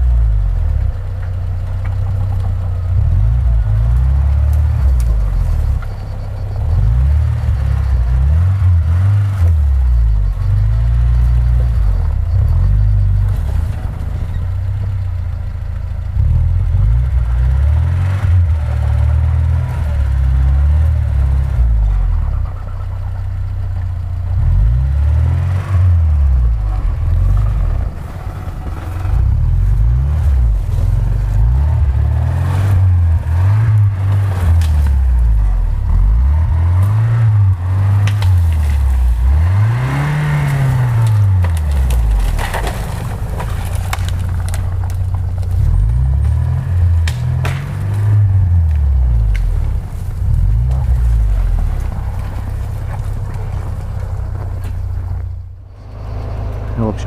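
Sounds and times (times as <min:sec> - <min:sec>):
engine revving: 0:00.0 - 0:57.0
wheels spinning: 0:37.5 - 0:48.0.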